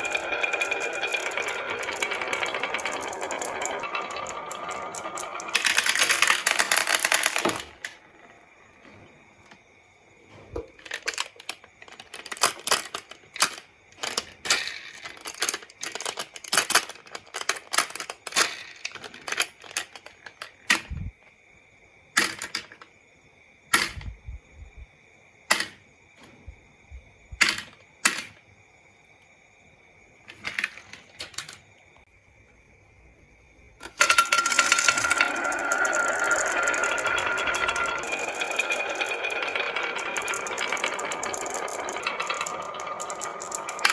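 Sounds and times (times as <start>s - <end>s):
marbles rolling on marble run: 0.0s - 9.6s, 10.5s - 21.1s, 33.8s - 43.9s
pieces clacking on track: 0.0s - 9.6s, 10.5s - 21.0s, 22.2s - 22.8s, 23.7s - 24.1s, 27.4s - 28.4s, 30.3s - 31.6s, 33.8s - 43.9s.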